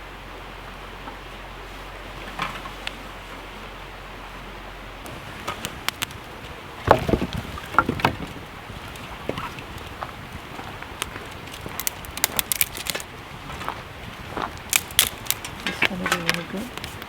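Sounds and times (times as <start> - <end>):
steady rushing hiss: 0.0 - 17.0
knocks and clicks: 5.0 - 17.0.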